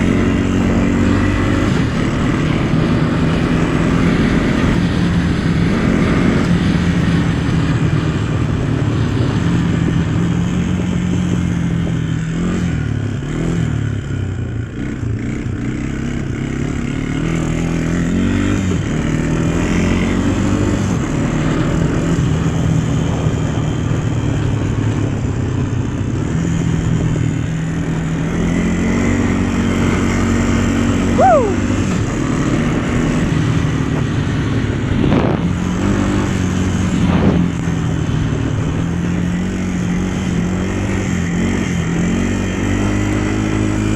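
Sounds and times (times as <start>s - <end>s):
vehicle engine running: 13.9s - 43.9s.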